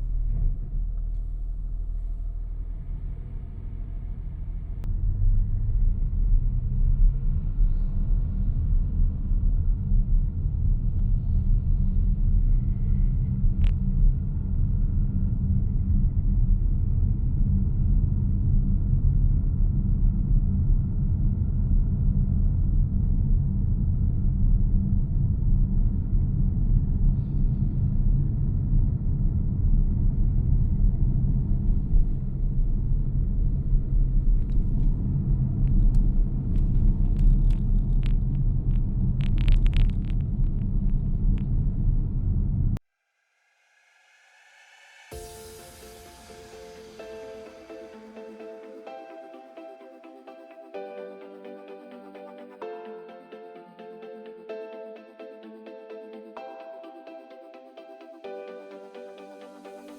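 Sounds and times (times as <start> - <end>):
car running low rumble: 0.0 - 42.8.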